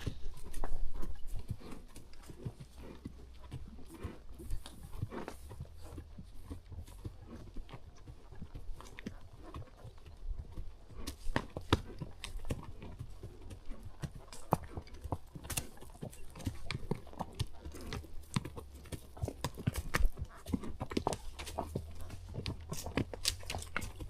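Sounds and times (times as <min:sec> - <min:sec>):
horse hooves clopping on dirt: 0:00.0 - 0:24.0.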